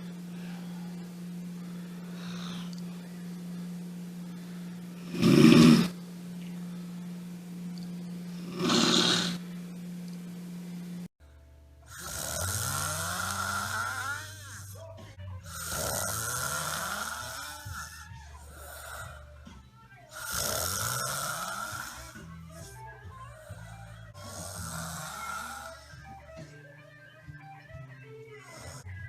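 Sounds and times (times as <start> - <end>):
person snoring loudly: 0.0 - 2.8, 4.4 - 6.0, 8.3 - 9.4, 11.8 - 19.4, 20.1 - 26.2, 28.4 - 29.0
music with low tones: 0.0 - 29.0.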